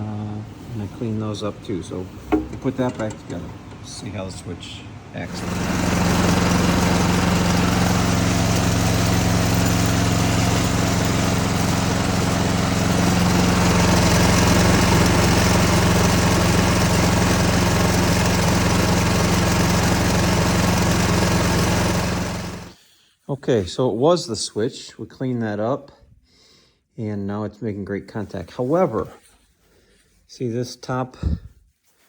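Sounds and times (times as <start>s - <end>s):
snowblower engine running: 0.3s - 22.8s.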